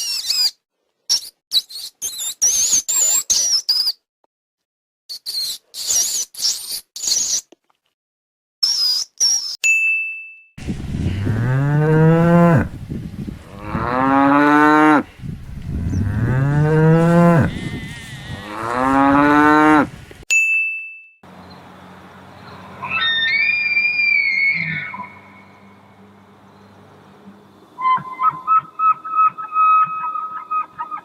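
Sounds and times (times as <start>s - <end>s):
cow mooing: 10.6s - 20.0s
high whistle-like call: 27.8s - 30.5s.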